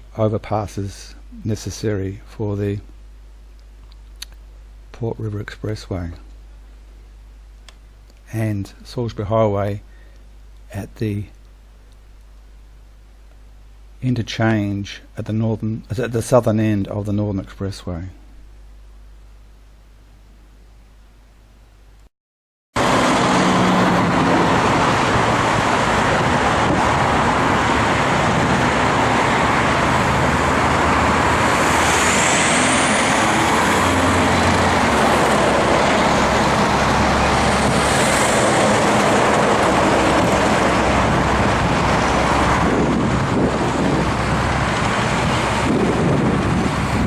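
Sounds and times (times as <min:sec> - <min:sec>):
road traffic passing: 0:22.8 - 0:47.0.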